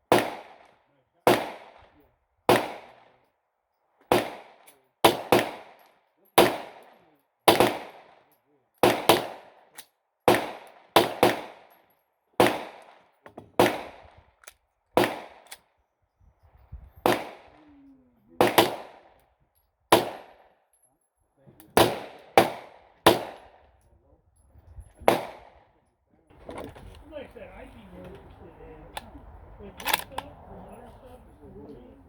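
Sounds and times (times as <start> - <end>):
gunshots with echo: 0.1 - 0.6, 1.3 - 1.8, 2.5 - 3.0, 4.1 - 5.8, 7.5 - 8.2, 8.8 - 9.5, 17.0 - 17.6, 18.4 - 19.0, 21.8 - 23.6, 25.0 - 25.6.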